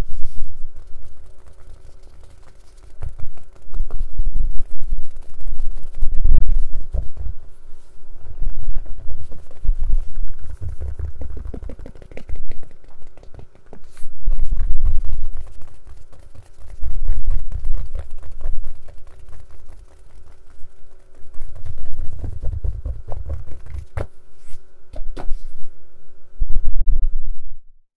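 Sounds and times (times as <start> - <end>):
case being tapped and scratched: 0.8 - 7.4, 8.8 - 24.1.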